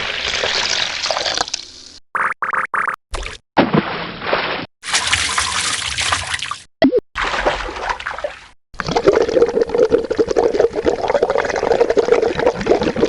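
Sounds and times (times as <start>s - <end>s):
water splashing: 3.2s - 9.0s
water pouring into container: 4.8s - 13.0s.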